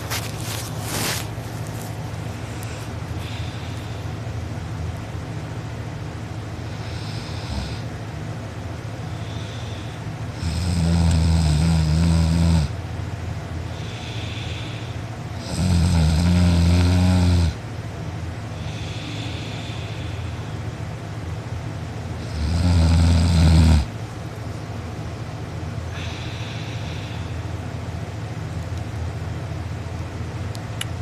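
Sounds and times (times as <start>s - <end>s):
soft hissing breaths: 0.0s - 5.0s, 6.1s - 28.4s
person snoring loudly: 6.7s - 7.9s, 10.4s - 12.8s, 15.4s - 17.6s, 22.2s - 23.9s.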